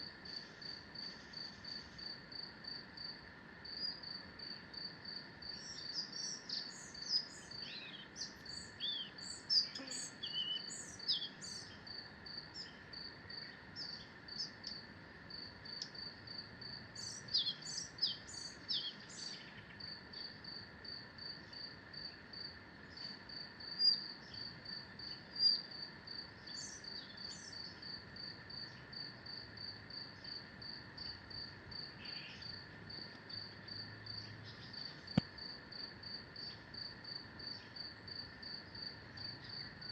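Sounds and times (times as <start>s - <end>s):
high insect chirping: 0.0s - 39.9s
birds singing: 5.6s - 11.8s, 17.0s - 19.8s, 25.1s - 25.7s, 32.0s - 32.6s.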